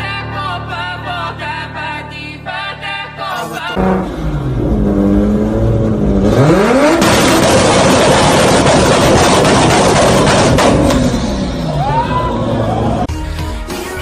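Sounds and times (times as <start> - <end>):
car engine revving: 3.6 - 13.1.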